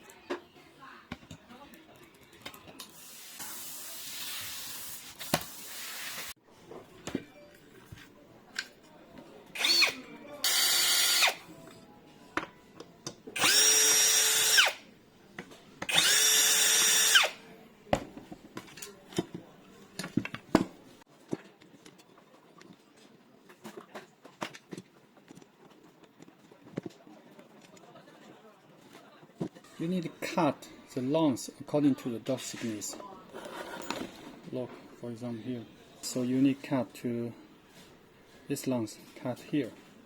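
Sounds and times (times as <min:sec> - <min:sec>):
electric drill whining: 0:09.6 - 0:11.4, 0:13.4 - 0:14.8, 0:15.9 - 0:17.4.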